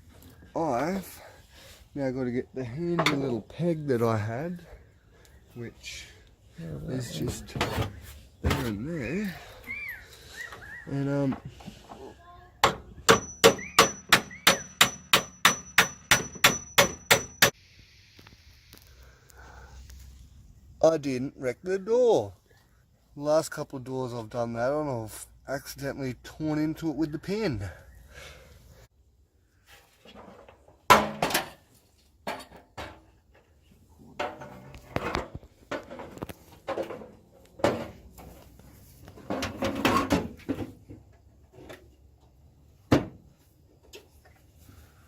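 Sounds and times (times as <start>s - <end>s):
hammer striking metal pin: 12.6s - 17.5s
sharp metallic clank: 13.1s - 17.5s.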